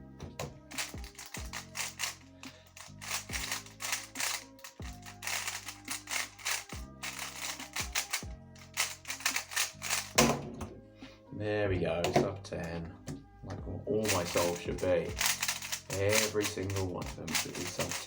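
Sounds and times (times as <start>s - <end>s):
background music: 0.0s - 18.0s
puzzle cube clacking: 0.7s - 10.2s, 14.0s - 18.0s.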